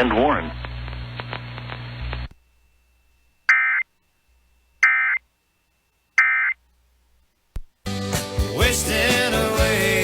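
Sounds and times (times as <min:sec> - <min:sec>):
broadcast hiss and hum: 0:00.0 - 0:07.9
digital data tone bursts: 0:03.5 - 0:03.9, 0:04.8 - 0:05.2, 0:06.1 - 0:06.6.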